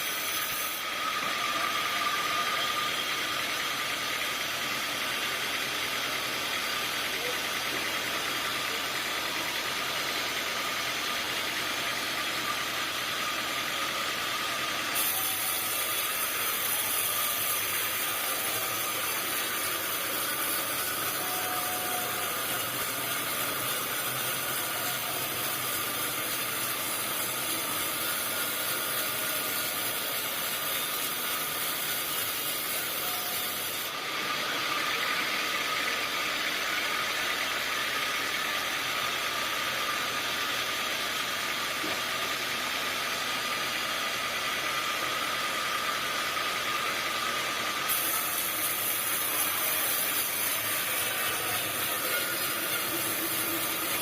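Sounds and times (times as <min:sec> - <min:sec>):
sawmill machinery running: 0:00.0 - 0:54.0
harsh high hiss: 0:47.9 - 0:54.0.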